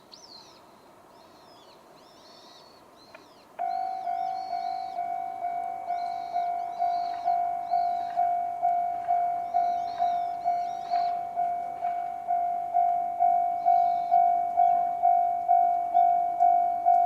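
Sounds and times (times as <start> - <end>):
level crossing electronic bell: 3.7 - 17.0.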